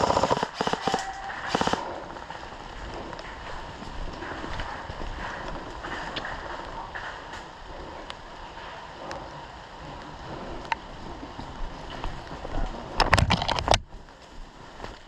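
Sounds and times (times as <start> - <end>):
airsoft gun burst: 0.0 - 2.0
clicks: 0.0 - 2.0.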